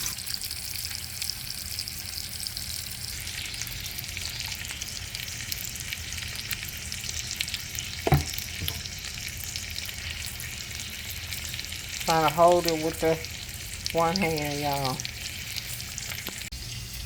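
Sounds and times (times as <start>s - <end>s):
meat sizzling in a pan: 0.0s - 17.0s
knock: 8.1s - 8.8s.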